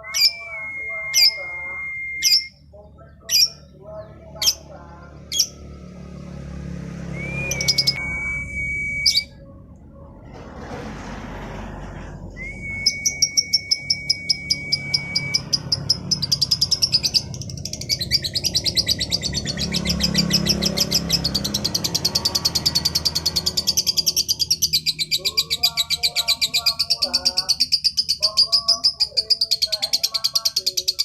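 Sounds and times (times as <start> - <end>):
steady high whistle tone: 0.0 - 2.6, 7.1 - 9.4, 12.4 - 15.6
lovebird chirping: 7.2 - 8.4.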